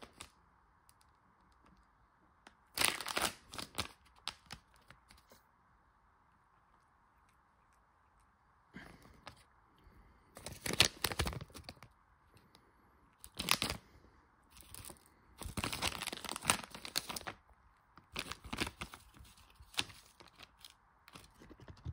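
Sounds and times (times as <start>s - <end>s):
wrapper crinkling: 2.7s - 5.2s, 10.4s - 11.9s, 13.2s - 13.8s, 14.5s - 17.4s, 18.1s - 21.3s.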